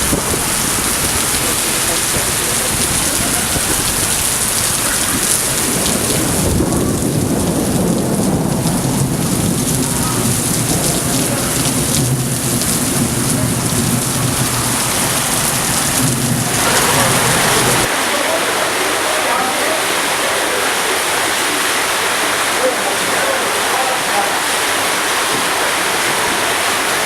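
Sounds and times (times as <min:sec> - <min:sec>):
heavy rain on hard surfaces: 0:00.0 - 0:27.0
low rumble: 0:02.5 - 0:17.9.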